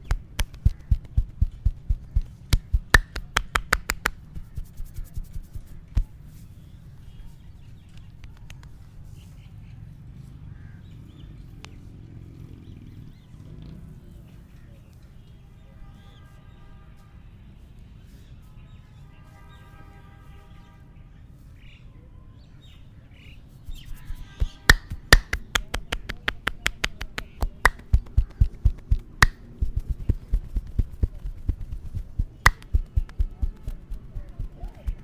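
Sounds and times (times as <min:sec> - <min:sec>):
hand slaps and taps on head: 0:00.0 - 0:06.1, 0:07.9 - 0:08.8, 0:23.7 - 0:35.0
sharp finger snap clicks: 0:00.0 - 0:06.1, 0:07.9 - 0:08.8, 0:23.7 - 0:31.0, 0:31.6 - 0:33.9.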